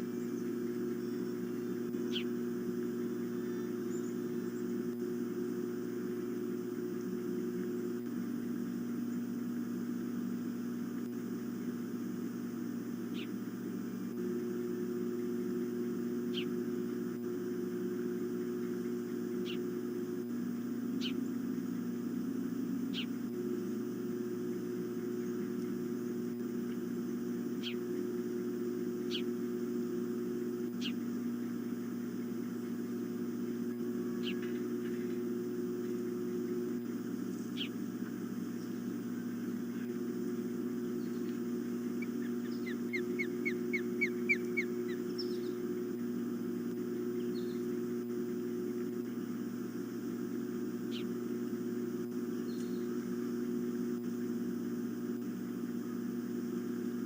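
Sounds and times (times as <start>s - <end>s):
high downward-sliding bird chirps: 0.0s - 2.4s, 3.4s - 4.7s, 13.1s - 13.4s, 16.3s - 16.6s, 19.4s - 19.8s, 22.9s - 23.2s, 27.6s - 28.0s, 29.0s - 29.3s, 30.8s - 31.0s, 37.2s - 37.8s, 41.9s - 45.6s, 47.1s - 47.7s, 50.9s - 51.2s, 52.4s - 53.0s
steady electrical hum: 0.0s - 57.0s.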